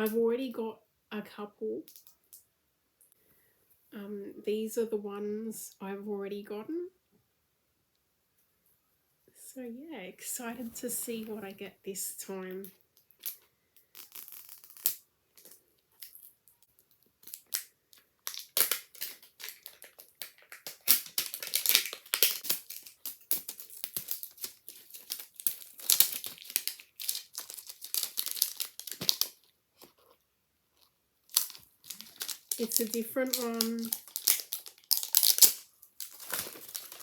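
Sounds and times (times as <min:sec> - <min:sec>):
packaging crinkling and tearing: 0:13.0 - 0:30.2, 0:30.8 - 0:37.0.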